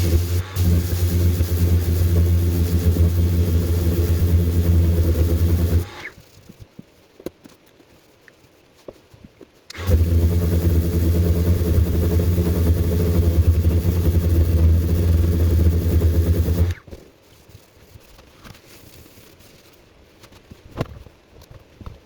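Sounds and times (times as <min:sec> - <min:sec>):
power sander humming: 0:00.0 - 0:06.1, 0:09.7 - 0:16.8.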